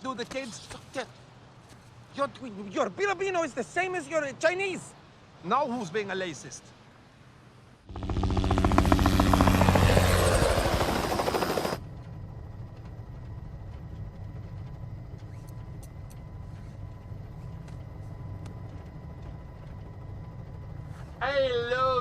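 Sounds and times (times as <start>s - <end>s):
helicopter rotor chopping: 7.9s - 12.3s
steady low drone: 7.9s - 20.8s.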